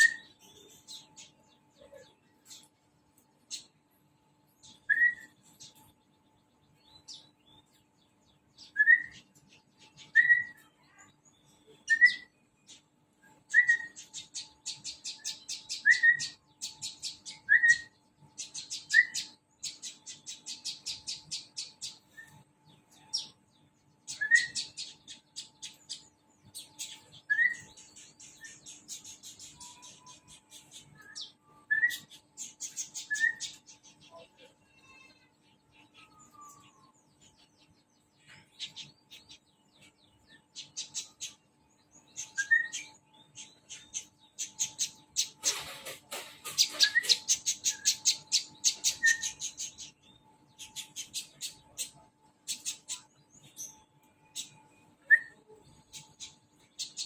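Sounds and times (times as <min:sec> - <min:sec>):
bird whistling and chattering: 0:00.0 - 0:00.4, 0:04.8 - 0:05.3, 0:08.6 - 0:09.2, 0:10.0 - 0:10.7, 0:11.8 - 0:12.3, 0:13.5 - 0:22.4, 0:24.1 - 0:26.0, 0:26.8 - 0:34.2, 0:42.2 - 0:50.0, 0:54.4 - 0:57.0.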